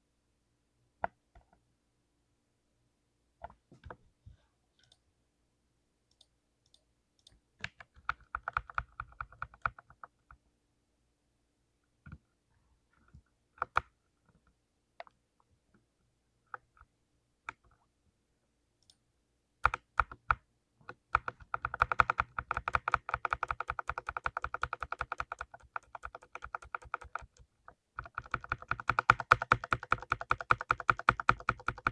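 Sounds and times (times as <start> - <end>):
clicky mechanical keyboard typing: 6.1 - 10.1, 21.1 - 31.9.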